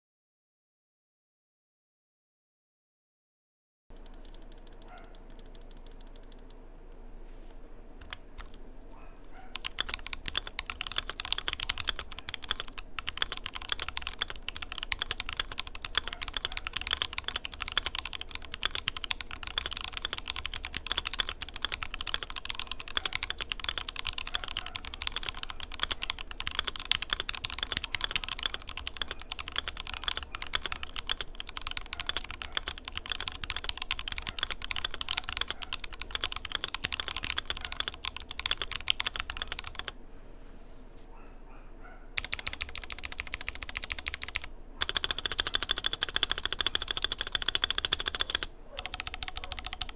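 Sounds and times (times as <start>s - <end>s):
mechanical keyboard typing: 3.9s - 6.6s, 8.0s - 8.6s, 9.5s - 40.0s, 42.2s - 49.9s.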